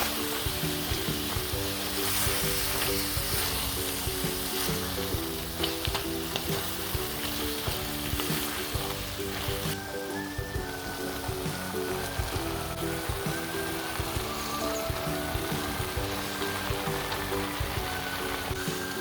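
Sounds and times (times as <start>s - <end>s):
food sizzling in frying pan: 0.0s - 19.0s
utensil clicking against pan: 0.1s - 9.8s.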